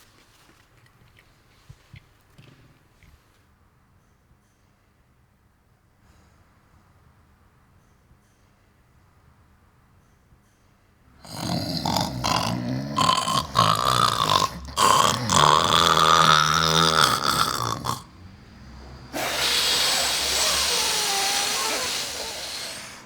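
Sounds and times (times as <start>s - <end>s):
person making guttural throat noise: 11.2s - 18.2s, 19.2s - 23.0s
steady hiss: 19.2s - 23.0s.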